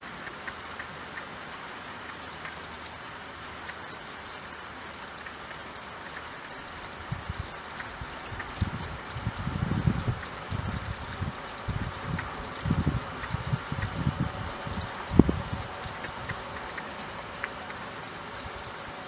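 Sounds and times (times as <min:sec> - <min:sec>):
raindrops ticking: 0:00.0 - 0:19.0
steady rain falling: 0:00.0 - 0:19.0
low rumbles: 0:08.5 - 0:16.7.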